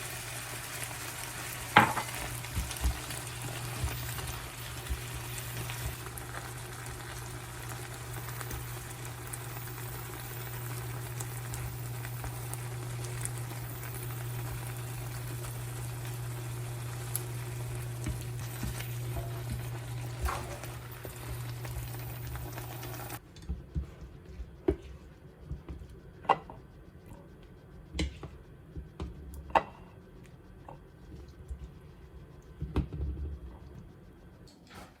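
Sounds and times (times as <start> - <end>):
food cooking hiss: 0.0 - 23.2
kitchenware clinking: 1.8 - 2.2.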